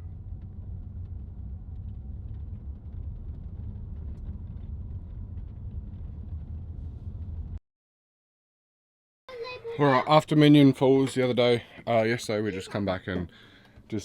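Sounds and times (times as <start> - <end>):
car engine and tyres rumbling: 0.0 - 7.6.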